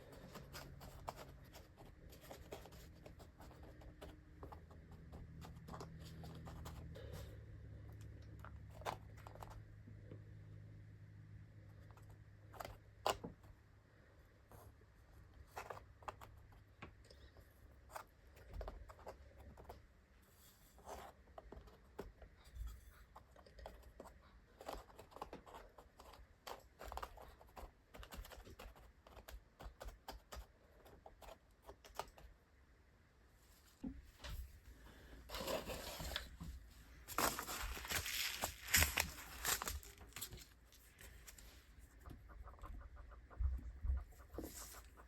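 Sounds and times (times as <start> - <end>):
small objects handled by hand: 33.6 - 42.3.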